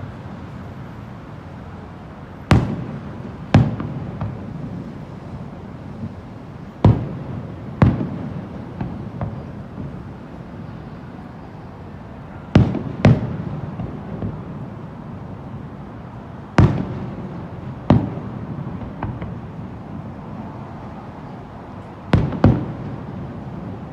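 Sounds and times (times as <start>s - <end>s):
fireworks bursting with bangs: 2.5s - 5.0s, 6.8s - 10.3s, 12.5s - 14.7s, 16.6s - 20.2s, 22.1s - 23.9s
faint fireworks pops: 2.5s - 11.0s, 12.3s - 14.9s, 16.5s - 20.4s, 21.7s - 23.9s.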